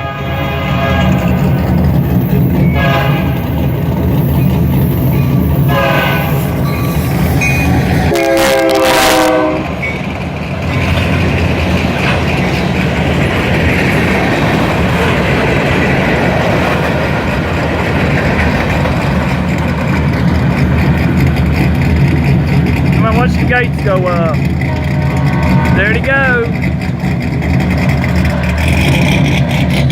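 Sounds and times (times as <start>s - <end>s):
diesel locomotive horn: 0.0s - 1.8s, 2.4s - 3.8s, 5.4s - 11.3s, 23.0s - 26.6s
freight train rumbling past: 0.0s - 29.9s.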